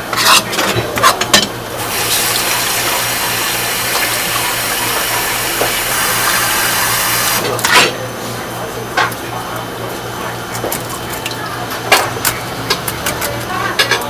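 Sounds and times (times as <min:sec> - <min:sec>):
tap running into sink: 0:01.8 - 0:07.4.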